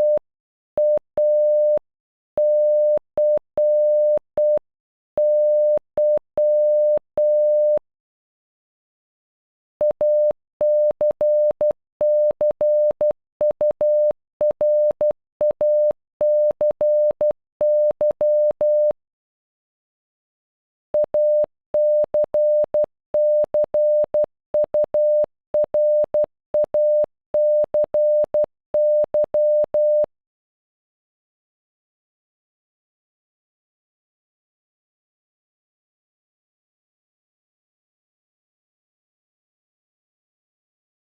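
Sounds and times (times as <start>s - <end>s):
morse code beeps: 0.0s - 0.2s, 0.8s - 1.8s, 2.4s - 4.6s, 5.2s - 7.8s, 9.8s - 19.0s, 21.0s - 30.1s.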